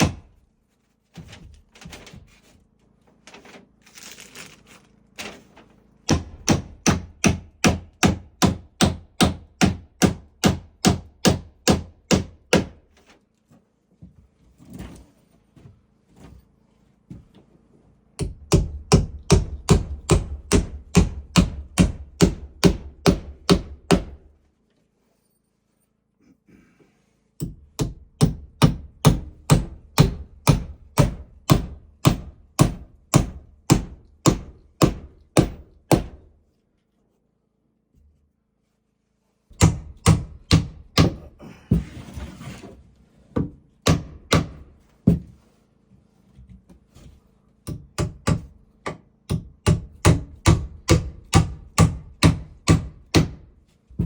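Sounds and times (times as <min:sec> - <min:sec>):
hammer driving nails into wood: 0:00.0 - 0:00.4, 0:06.1 - 0:12.8, 0:18.2 - 0:24.3, 0:27.4 - 0:36.3, 0:39.5 - 0:41.4, 0:43.4 - 0:45.3, 0:47.6 - 0:53.5.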